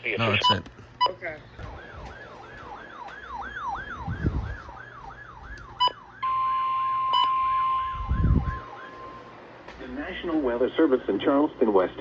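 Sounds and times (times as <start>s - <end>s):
electronic siren sweeping down: 1.6s - 9.4s.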